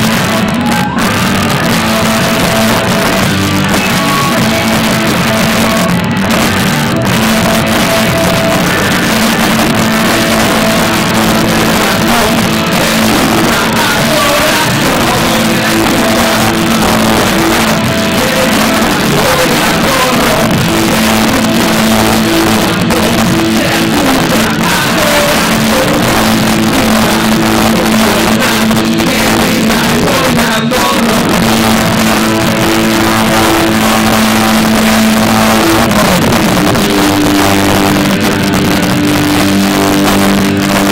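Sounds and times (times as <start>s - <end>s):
rock band playing live: 0.0s - 40.9s.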